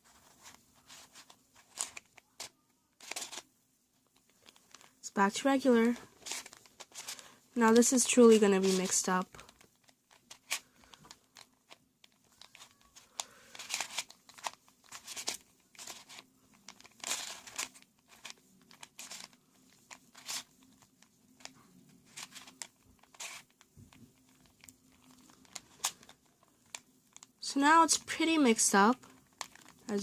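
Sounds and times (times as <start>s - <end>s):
puzzle cube clicking turns: 0.2s - 3.5s, 4.1s - 4.9s, 6.0s - 30.0s.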